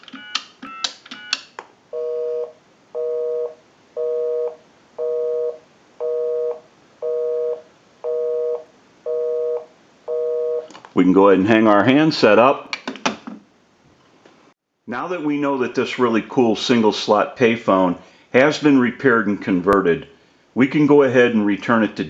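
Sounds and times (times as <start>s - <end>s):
busy signal beeps: 2.0s - 10.6s.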